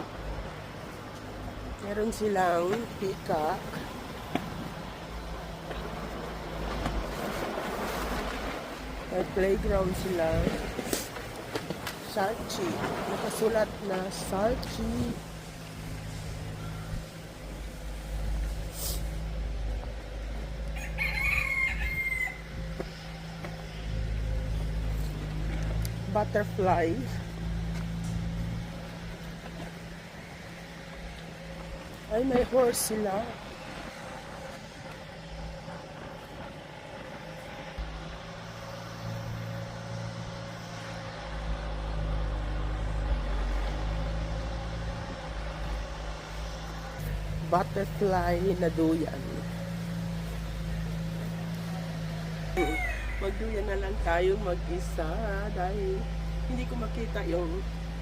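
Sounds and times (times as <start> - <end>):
large fowl calling: 20.8 - 22.5, 52.6 - 53.4
steady low hum: 21.7 - 58.0.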